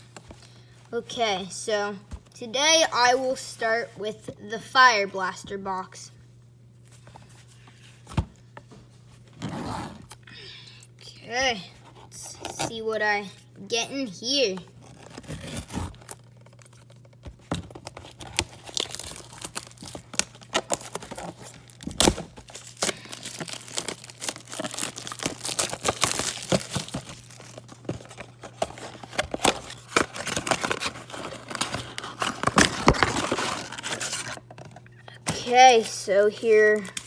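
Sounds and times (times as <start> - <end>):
card packs rustling: 14.3 - 37.0
cardboard tearing: 14.7 - 17.0, 17.6 - 34.5
wrapper crinkling: 14.8 - 34.7.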